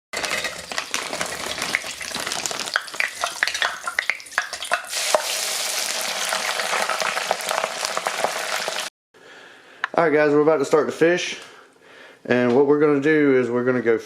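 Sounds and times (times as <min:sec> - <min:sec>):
grease sizzling and popping: 0:00.2 - 0:08.9.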